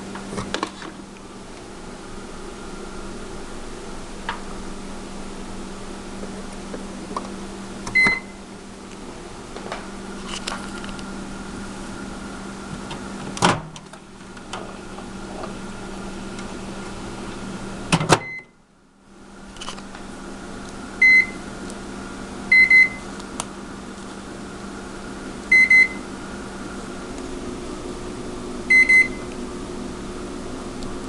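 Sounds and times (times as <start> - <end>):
microwave oven humming: 0.0 - 31.0
control panel beeps: 7.9 - 8.4, 21.0 - 21.4, 22.5 - 23.0, 25.5 - 26.0, 28.7 - 29.2.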